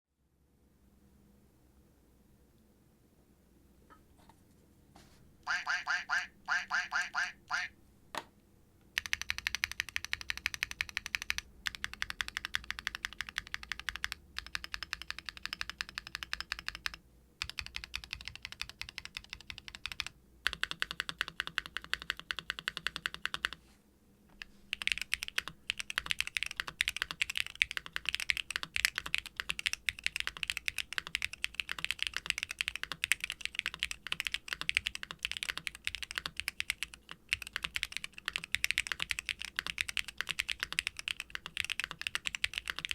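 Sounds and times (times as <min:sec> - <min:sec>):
typing on mechanical keyboard: 0:09.0 - 0:23.6, 0:24.4 - 0:42.9.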